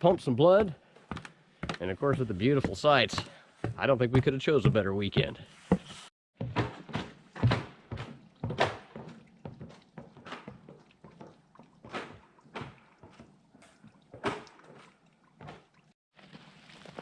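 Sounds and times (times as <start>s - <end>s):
footsteps on a staircase: 0.6s - 13.3s.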